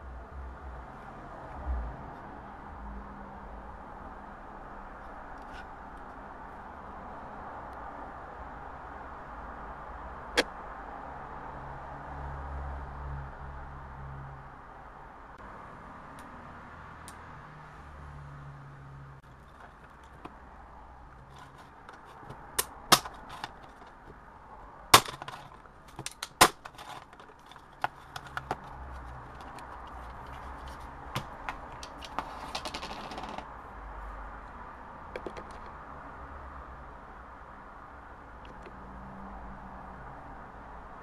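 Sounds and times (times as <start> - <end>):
plastic parts clicking and snapping: 21.2 - 24.2, 25.0 - 33.4, 35.2 - 35.7, 38.4 - 38.8.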